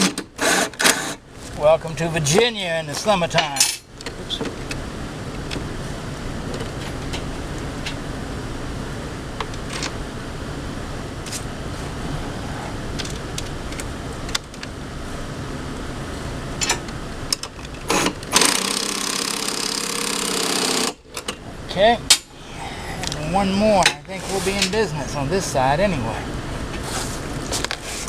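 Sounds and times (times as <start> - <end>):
power tool driving a fastener: 0.0 - 1.2, 17.9 - 21.0
steady low rumble: 1.2 - 18.4, 21.0 - 28.0.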